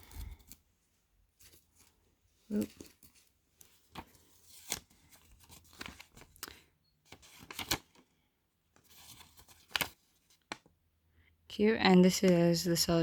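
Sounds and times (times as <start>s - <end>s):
packaging crinkling and tearing: 7.2s - 8.0s, 8.9s - 10.5s.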